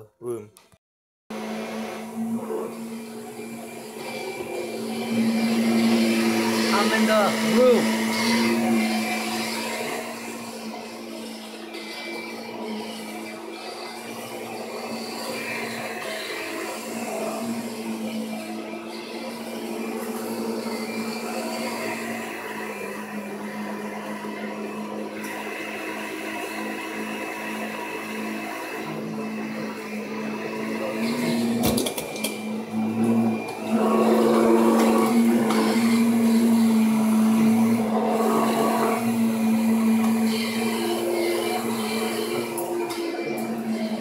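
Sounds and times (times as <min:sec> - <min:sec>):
vacuum cleaner running: 0:01.3 - 0:44.0.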